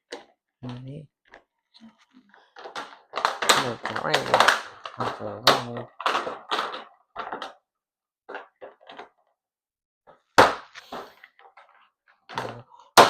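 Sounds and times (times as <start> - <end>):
packaging rustling and scraping: 1.3 - 7.6.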